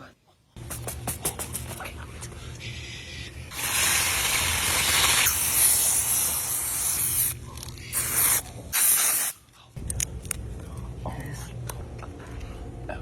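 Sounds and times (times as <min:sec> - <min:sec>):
aerosol can spraying: 0:03.5 - 0:07.4, 0:08.0 - 0:09.4.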